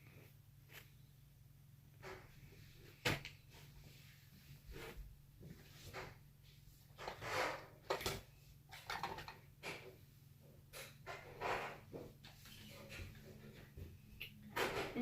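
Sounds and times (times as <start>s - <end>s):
toys rustling and knocking: 6.8s - 10.1s.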